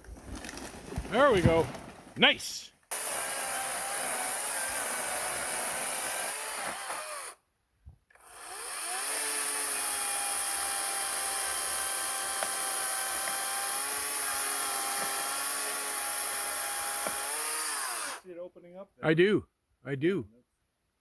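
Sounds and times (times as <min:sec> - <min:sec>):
chainsaw cutting wood: 0:02.9 - 0:07.4, 0:08.1 - 0:18.2.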